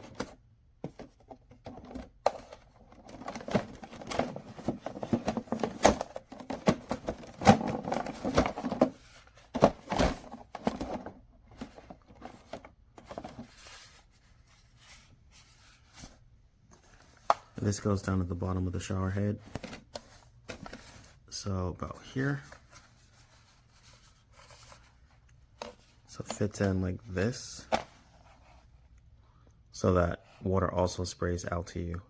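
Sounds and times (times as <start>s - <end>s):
plastic parts clicking and knocking: 0.0s - 13.5s
rustling: 21.9s - 26.3s.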